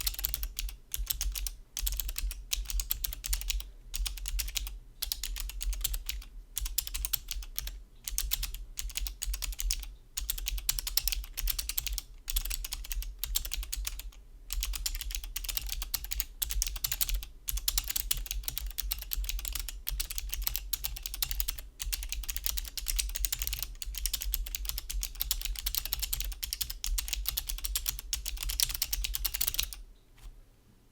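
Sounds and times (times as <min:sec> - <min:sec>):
fast mechanical keyboard typing: 0:00.0 - 0:29.8.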